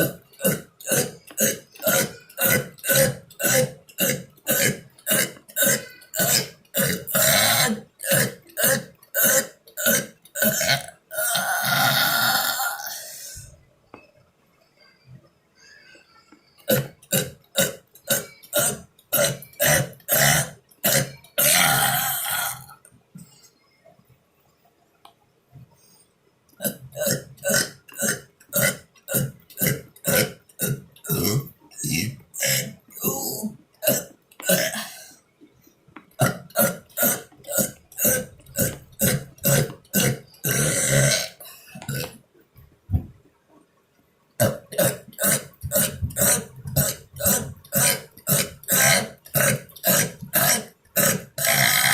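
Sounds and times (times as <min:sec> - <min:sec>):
man burping: 0:00.0 - 0:13.5, 0:16.6 - 0:22.9, 0:26.6 - 0:35.2, 0:36.0 - 0:42.2, 0:44.4 - 0:51.9.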